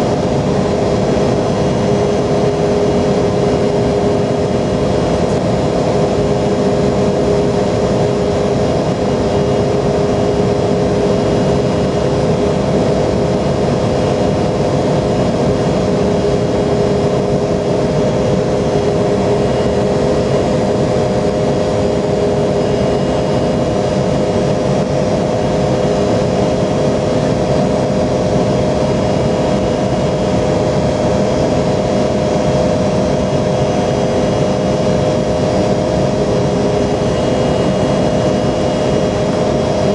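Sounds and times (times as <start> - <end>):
jet engines running: 0.0 - 39.9.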